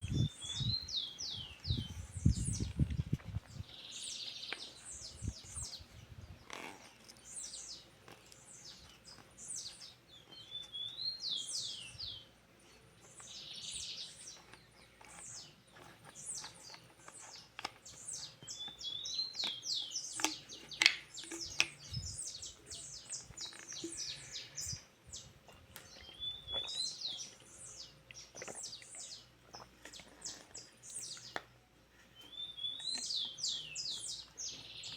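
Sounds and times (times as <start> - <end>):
songbird singing: 0.0 - 34.9.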